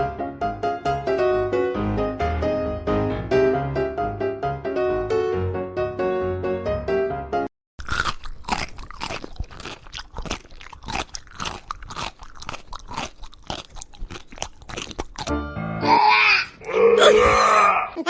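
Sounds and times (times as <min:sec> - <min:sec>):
piano music: 0:00.0 - 0:07.5, 0:15.3 - 0:16.0
crunchy chewing: 0:07.8 - 0:15.3.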